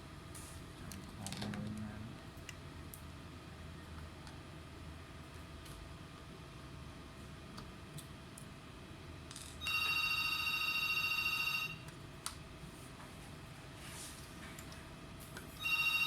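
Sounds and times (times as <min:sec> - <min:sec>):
telephone ringing: 0:09.6 - 0:11.8, 0:15.6 - 0:16.0.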